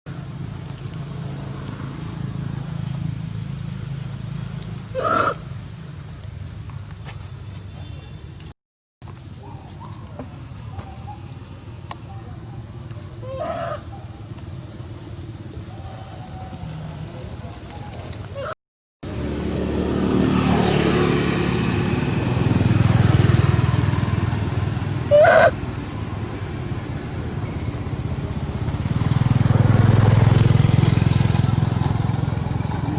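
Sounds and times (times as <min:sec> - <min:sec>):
monkey call: 0:04.8 - 0:05.6, 0:09.4 - 0:14.4, 0:15.6 - 0:18.6, 0:25.0 - 0:25.6
high-pitched macaque call: 0:04.9 - 0:05.5, 0:13.2 - 0:14.2, 0:25.1 - 0:25.6
small engine humming: 0:19.1 - 0:32.9.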